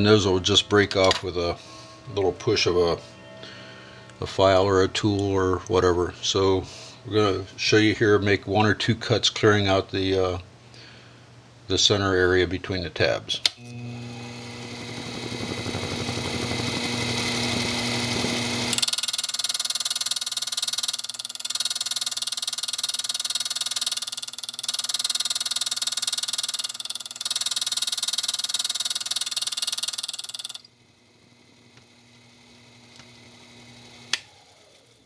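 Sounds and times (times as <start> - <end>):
machine tool cutting whine: 13.5 - 35.0
motor hum: 13.5 - 35.0.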